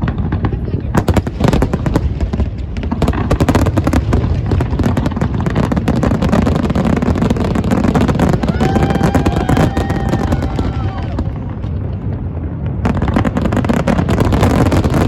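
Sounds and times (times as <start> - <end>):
fireworks crackling and popping: 0.0 - 15.0
crowd voices: 8.2 - 12.4.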